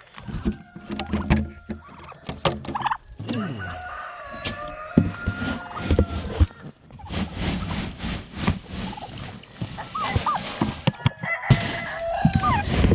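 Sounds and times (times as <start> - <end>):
chickens clucking: 0.0 - 12.9
turkeys gobbling: 0.1 - 7.1, 8.8 - 12.8
rooster crow: 3.3 - 6.6, 10.8 - 12.7.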